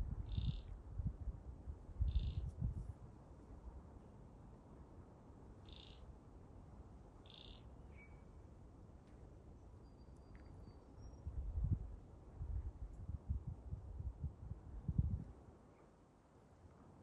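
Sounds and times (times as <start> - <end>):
bird chirps: 0.3 - 0.7, 2.1 - 2.5, 5.7 - 6.0, 7.2 - 8.3, 9.8 - 11.3
faint thin bird whistle: 0.3 - 0.7, 2.1 - 2.5, 5.7 - 6.0, 7.3 - 8.4, 9.8 - 11.3.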